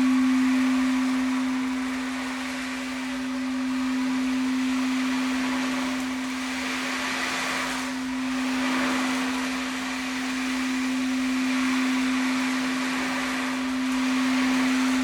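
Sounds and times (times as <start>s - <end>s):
singing bowl low tone: 0.0s - 15.0s
soft rushing hiss: 0.0s - 15.0s.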